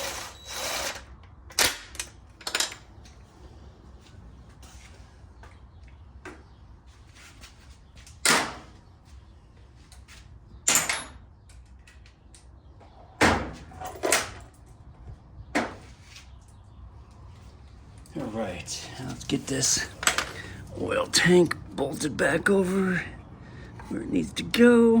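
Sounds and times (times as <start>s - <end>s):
metal tools knocking and clanking: 20.0s - 20.6s.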